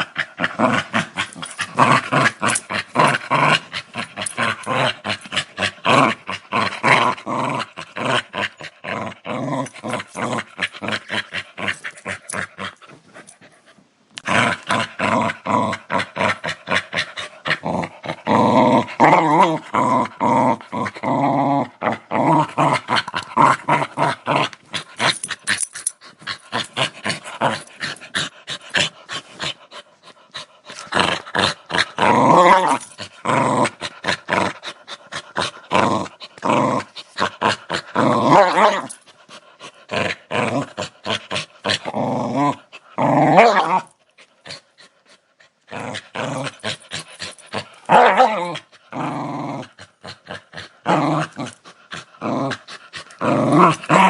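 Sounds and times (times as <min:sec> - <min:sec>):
dog growling: 0:00.0 - 0:13.4, 0:14.2 - 0:54.0.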